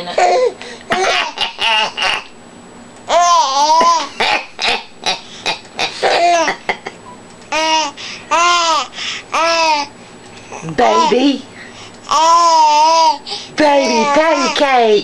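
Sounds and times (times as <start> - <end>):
baby babbling: 3.1 - 4.1, 7.5 - 9.9, 10.5 - 11.2, 12.1 - 14.8.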